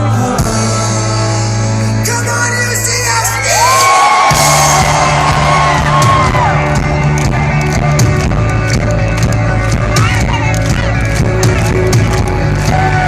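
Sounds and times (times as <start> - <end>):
bass guitar: 0.0 - 13.0
audience whooping and shouting: 3.0 - 8.7, 9.3 - 13.0
live rock band playing: 4.1 - 13.0.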